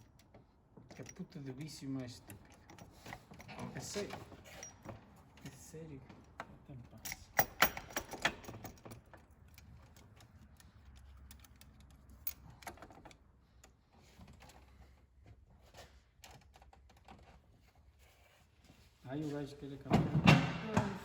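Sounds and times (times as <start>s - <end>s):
metal tools clicking and clinking: 0.0s - 5.6s, 6.9s - 13.2s.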